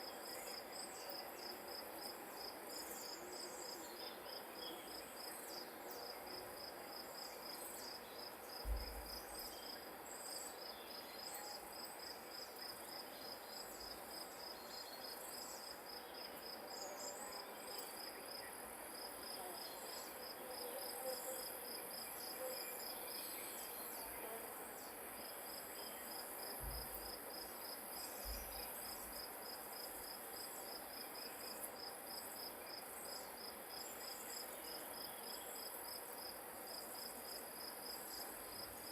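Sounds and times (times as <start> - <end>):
crickets chirping: 0.0 - 38.9
high insect hiss: 0.0 - 38.9
low thump: 8.6 - 9.1, 26.6 - 27.0.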